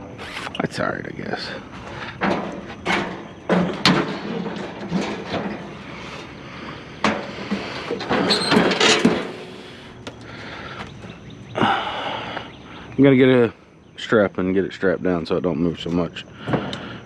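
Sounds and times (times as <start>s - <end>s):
grill knocking and clanking: 1.4s - 9.8s.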